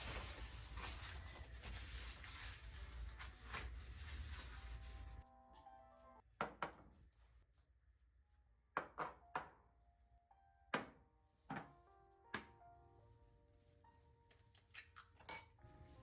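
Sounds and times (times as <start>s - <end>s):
faint background music: 9.2s - 16.0s.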